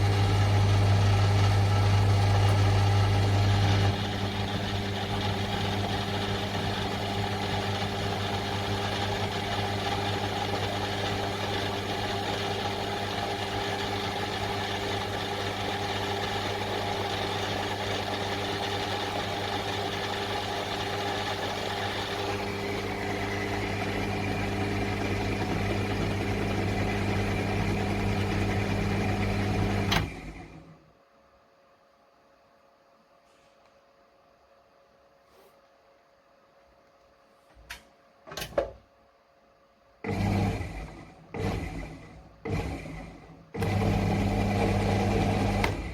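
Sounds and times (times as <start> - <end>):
drill press motor humming: 0.0 - 30.6, 40.0 - 45.9.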